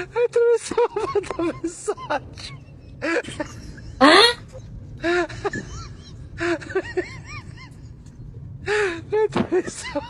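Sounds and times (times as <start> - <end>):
animal making short calls: 4.0 - 4.4.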